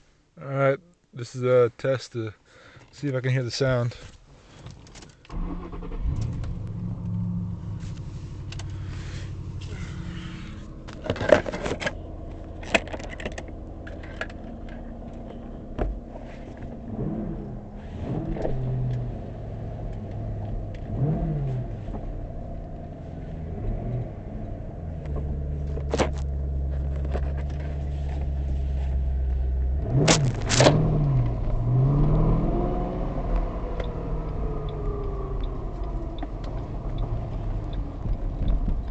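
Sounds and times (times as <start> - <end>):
car engine revving: 5.3 - 38.9
sharp clicks and rattles: 10.8 - 15.5, 29.9 - 31.6, 33.7 - 38.9.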